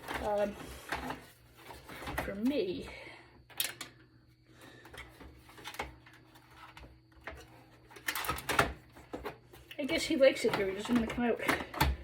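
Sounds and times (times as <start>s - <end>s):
computer parts clicking and knocking: 7.2s - 9.3s.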